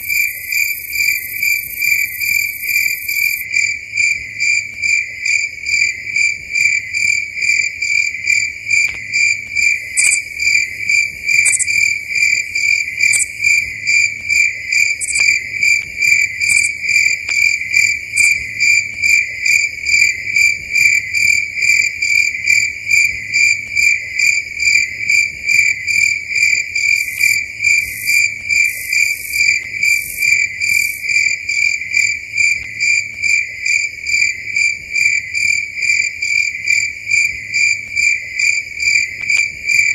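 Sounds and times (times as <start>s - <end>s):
high insect chirps: 0.0s - 3.4s, 6.6s - 33.8s
crickets chirping: 0.0s - 39.9s.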